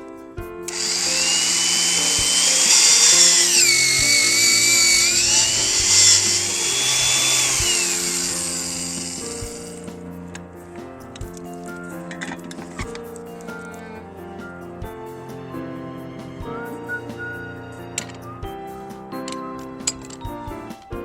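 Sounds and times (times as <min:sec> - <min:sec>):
electric pipe-facing tool whining: 0:00.7 - 0:09.9.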